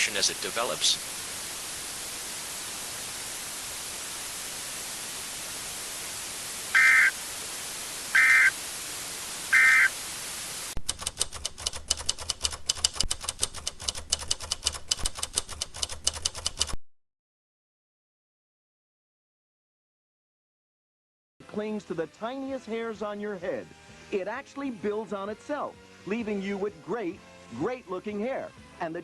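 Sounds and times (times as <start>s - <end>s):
crackling static with low buzz: 0.0s - 10.8s
steady hiss: 0.0s - 10.8s
screeching data tone bursts: 6.7s - 7.2s, 8.1s - 8.6s, 9.5s - 9.9s.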